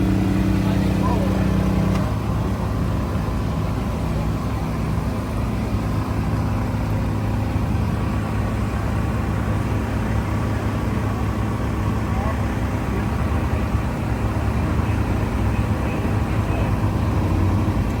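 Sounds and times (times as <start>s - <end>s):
car engine drone: 0.0s - 18.0s
road noise: 0.0s - 18.0s.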